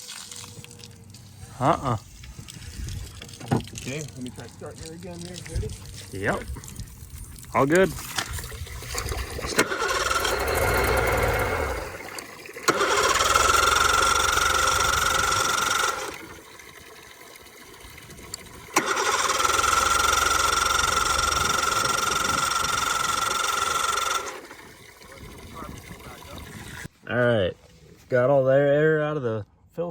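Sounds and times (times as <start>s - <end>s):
outboard motor starter cranking: 0.0s - 26.9s
high starter whine: 7.6s - 26.9s.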